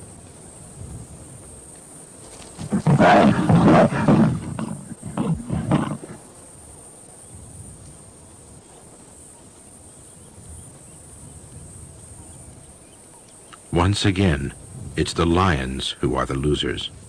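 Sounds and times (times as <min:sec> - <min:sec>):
lion growling and snarling: 0:02.6 - 0:06.2.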